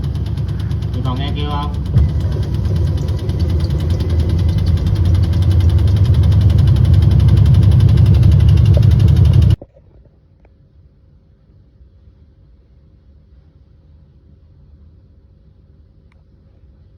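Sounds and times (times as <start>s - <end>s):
appliance humming: 0.0s - 9.6s
fast crackle inside machine: 0.0s - 9.6s.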